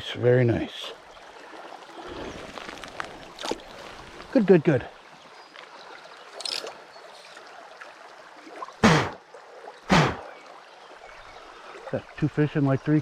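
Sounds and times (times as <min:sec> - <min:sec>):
creek running: 0:00.0 - 0:13.0.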